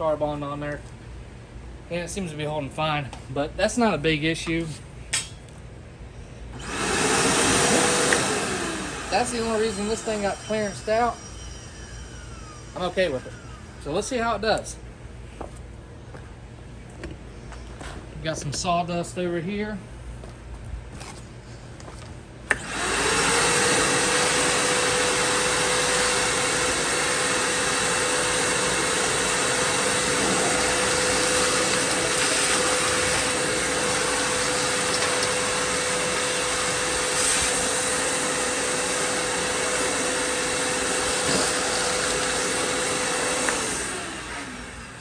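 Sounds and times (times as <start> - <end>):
shop vacuum motor whine: 6.5 - 14.7, 22.5 - 45.0.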